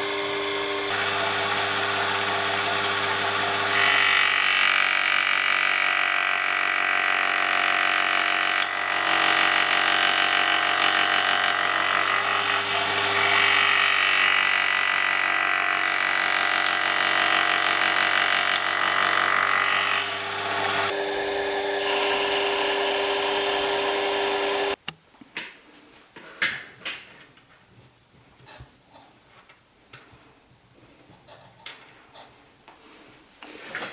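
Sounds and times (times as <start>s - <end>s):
electric power tool whining: 0.0s - 24.8s.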